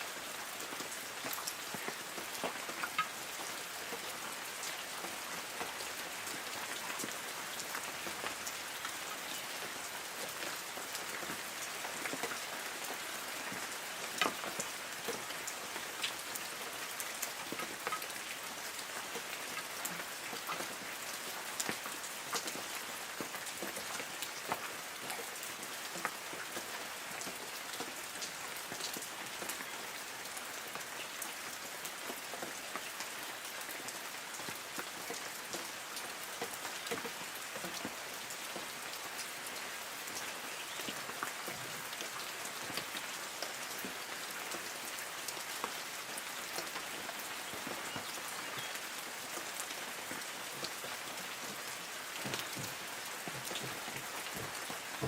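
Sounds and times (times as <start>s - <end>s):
light rain on leaves: 0.0s - 55.0s.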